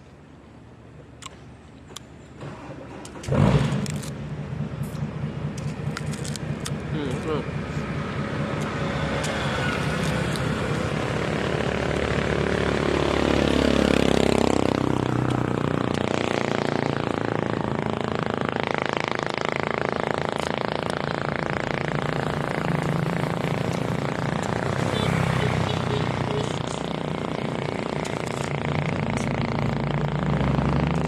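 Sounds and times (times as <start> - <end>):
steady traffic noise: 0.0 - 31.0
vehicle passing close: 2.4 - 31.0.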